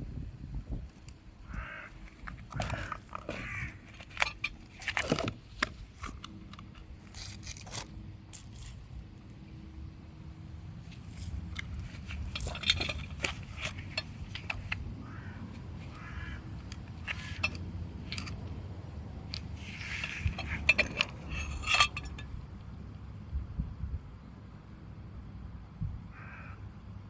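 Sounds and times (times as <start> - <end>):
hard objects clicking and rattling: 2.1 - 8.8, 10.9 - 14.9, 16.5 - 18.6, 19.2 - 22.4.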